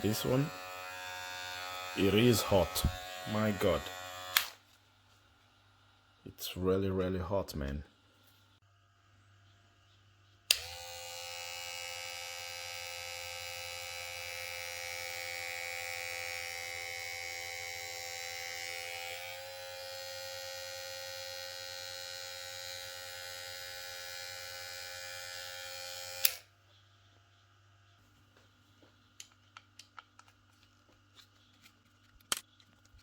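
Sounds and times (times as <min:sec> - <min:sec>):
hair clipper motor whine: 0:00.0 - 0:04.6, 0:10.5 - 0:26.5
hair clipper switch click: 0:03.8 - 0:04.6, 0:10.5 - 0:10.8, 0:25.2 - 0:26.4.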